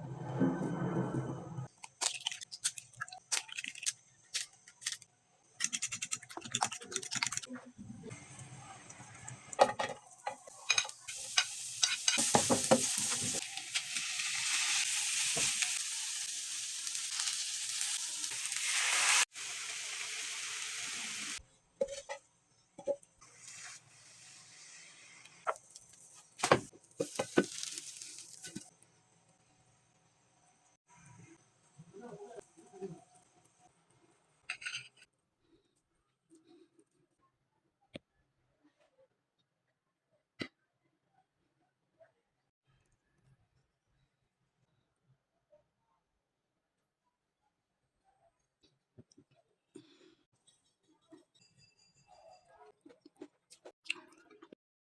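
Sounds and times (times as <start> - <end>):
food sizzling in a pan: 8.1 - 21.4, 23.2 - 28.7.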